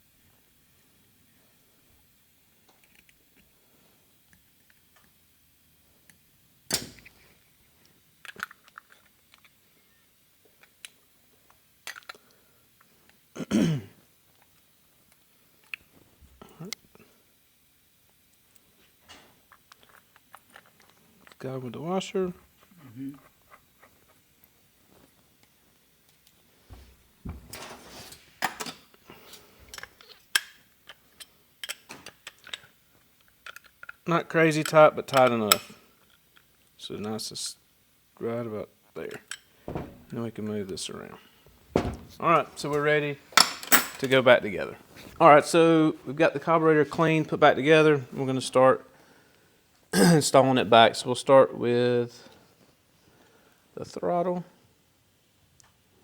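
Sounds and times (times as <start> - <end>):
small metal parts clicking: 8.2 - 9.6, 29.7 - 34.0
soft thumps: 26.7 - 27.5, 39.7 - 40.2, 41.5 - 42.2.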